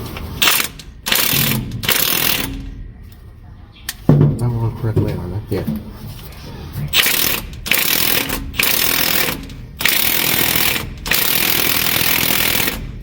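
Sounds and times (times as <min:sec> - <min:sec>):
impact wrench hammering: 0:00.4 - 0:02.8, 0:07.0 - 0:12.9.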